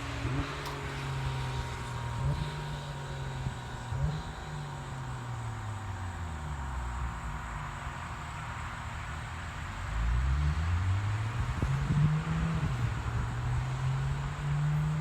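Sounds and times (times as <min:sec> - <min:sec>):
engine running: 0:11.3 - 0:15.0.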